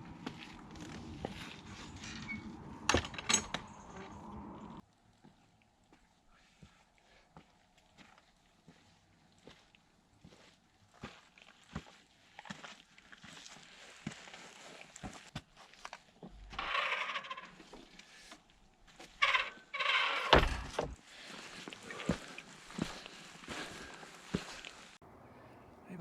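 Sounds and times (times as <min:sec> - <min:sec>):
footsteps on a path: 0:00.0 - 0:02.1, 0:05.2 - 0:16.3, 0:21.0 - 0:25.0.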